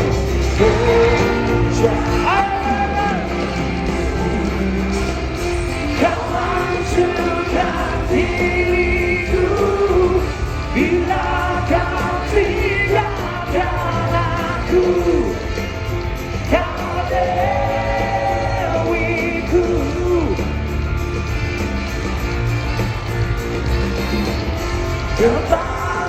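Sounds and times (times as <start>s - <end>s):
person singing: 0.0s - 15.6s
crowd yelling: 0.0s - 26.0s
live band music: 0.0s - 26.0s.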